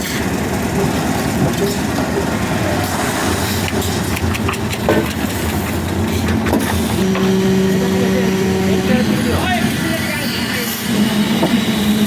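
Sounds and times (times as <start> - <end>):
engine humming steadily: 0.0 - 12.0
knocks and clatter: 3.6 - 7.3
higher steady hum: 7.0 - 12.0.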